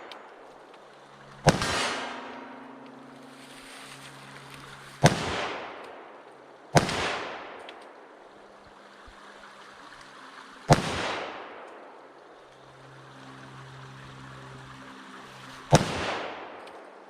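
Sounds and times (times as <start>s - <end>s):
gunshots with echo: 1.4s - 3.4s, 5.0s - 7.9s, 10.7s - 11.7s.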